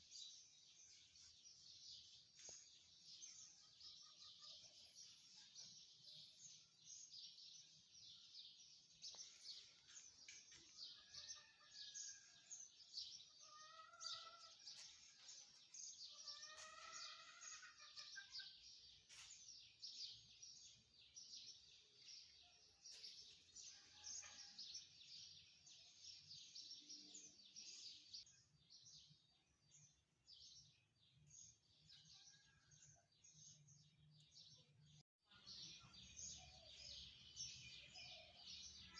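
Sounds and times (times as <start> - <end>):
small birds chirping: 0.0 - 38.9.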